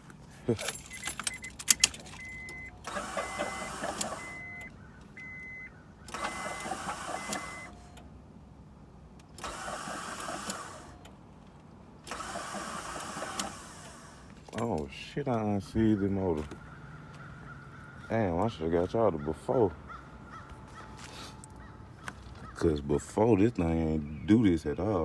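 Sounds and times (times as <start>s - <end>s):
starter cranking engine: 0.8s - 4.7s, 6.0s - 7.8s, 9.3s - 11.1s, 12.0s - 14.3s
repeated beeping tone: 0.9s - 5.7s.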